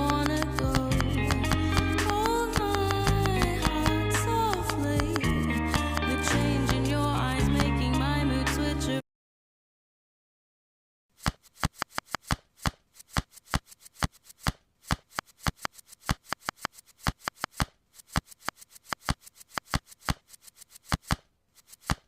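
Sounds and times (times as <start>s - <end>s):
plastic puzzle tiles clicking: 0.0s - 3.9s, 11.2s - 22.0s.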